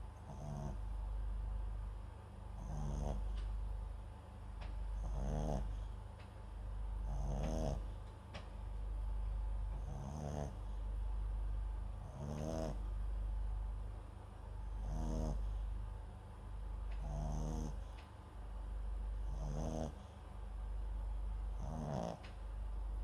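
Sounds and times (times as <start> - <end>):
dog snoring: 0.2 - 1.0, 2.4 - 3.5, 4.9 - 6.0, 7.0 - 8.0, 9.7 - 10.8, 12.0 - 12.9, 14.6 - 15.8, 16.9 - 18.0, 19.1 - 20.2, 21.5 - 22.4.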